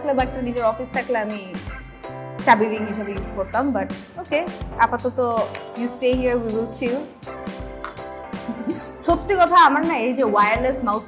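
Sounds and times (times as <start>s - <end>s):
music with held chords: 0.0s - 11.0s
low bass line: 1.7s - 5.5s, 6.2s - 9.5s.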